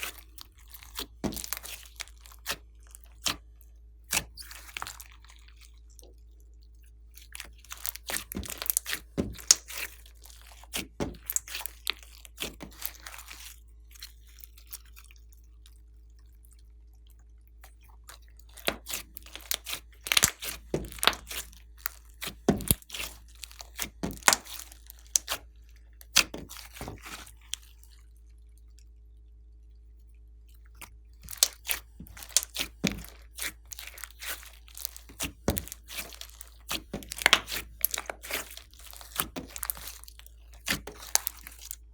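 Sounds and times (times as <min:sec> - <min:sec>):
slime crackling and popping: 0:00.0 - 0:03.5, 0:07.2 - 0:15.4, 0:18.0 - 0:28.0, 0:30.8 - 0:41.9.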